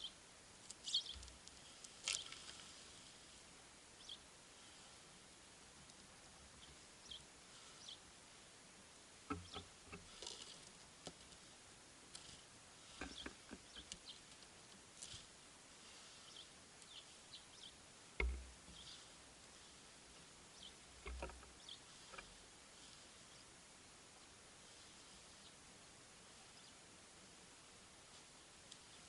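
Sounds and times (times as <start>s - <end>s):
songbirds chirping: 0.0s - 29.0s
sharp taps and knocks: 18.2s - 18.6s, 21.0s - 21.5s.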